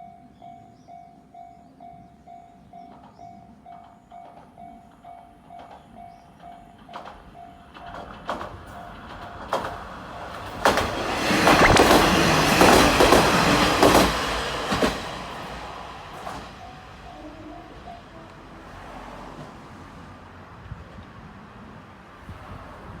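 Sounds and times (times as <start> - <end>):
crossing bell dinging: 0.0 - 10.6, 11.9 - 19.0
diesel train passing: 0.0 - 23.0
wheels clicking over rail joints: 2.7 - 18.4.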